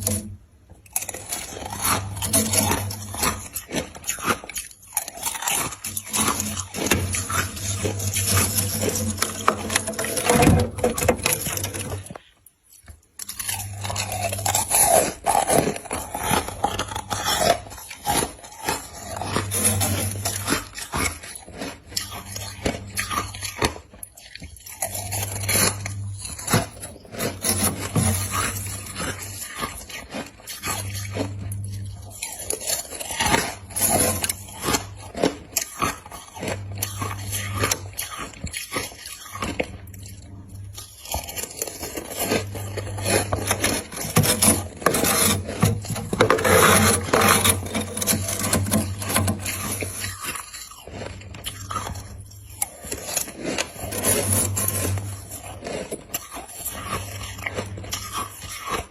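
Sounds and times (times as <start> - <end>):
ice being chewed: 0.0 - 58.9.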